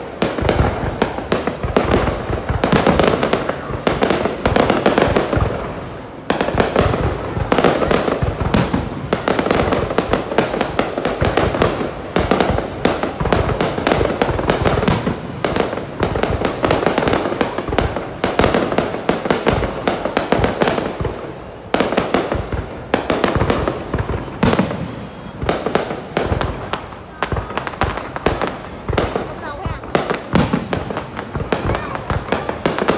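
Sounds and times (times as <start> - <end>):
fireworks bangs and crackles: 0.0 - 32.9.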